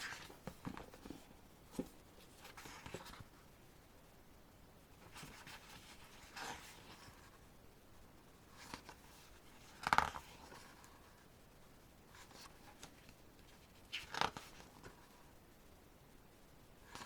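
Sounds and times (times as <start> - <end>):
book pages rustling: 0.0 - 3.4, 5.0 - 7.4, 8.5 - 11.2, 12.1 - 15.2.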